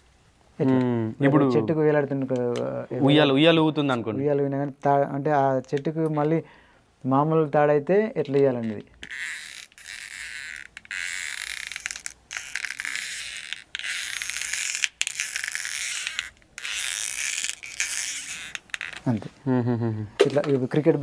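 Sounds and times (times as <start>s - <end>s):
rope creaking: 8.5s - 19.4s.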